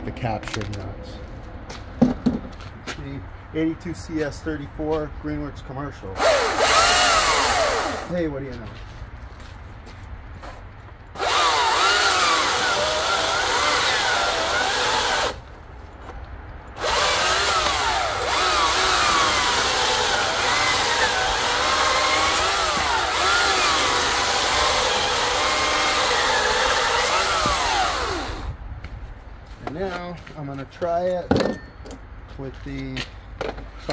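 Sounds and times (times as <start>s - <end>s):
electric chainsaw cutting log: 6.2s - 8.2s, 11.2s - 15.4s, 16.8s - 28.6s.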